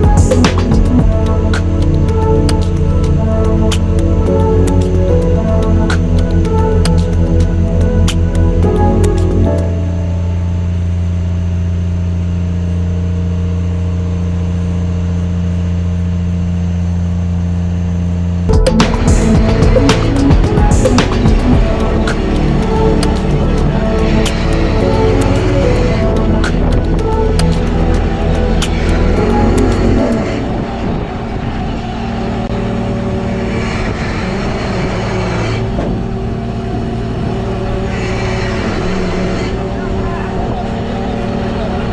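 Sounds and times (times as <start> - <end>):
boat engine humming: 18.5 - 33.4.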